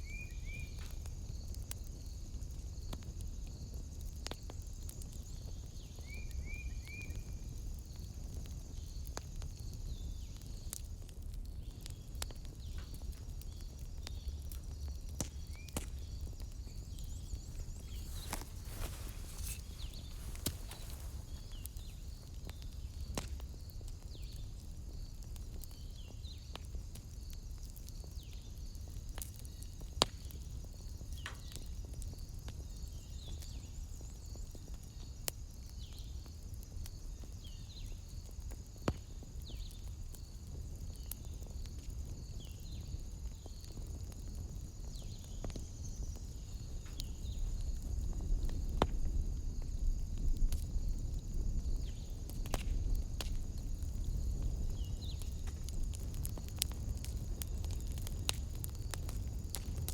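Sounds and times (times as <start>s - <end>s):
wood fire crackling: 0.1s - 59.9s
sharp pops: 17.4s - 22.0s.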